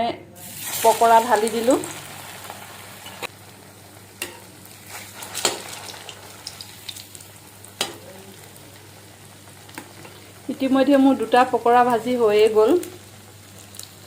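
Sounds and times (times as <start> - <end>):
deep-frying sizzle in hot oil: 0.4 - 14.0.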